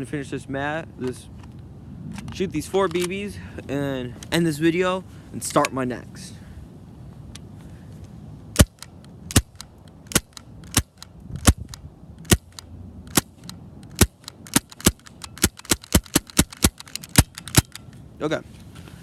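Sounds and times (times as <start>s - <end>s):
bb pistol firing: 8.6s - 17.8s.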